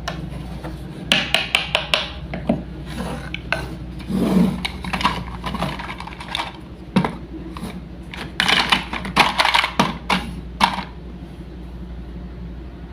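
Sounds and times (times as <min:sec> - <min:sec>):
wooden toys clacking: 0:04.6 - 0:10.9.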